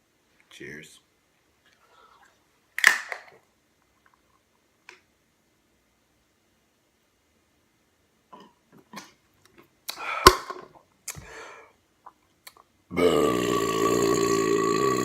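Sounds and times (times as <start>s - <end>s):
man burping: 12.9s - 15.0s.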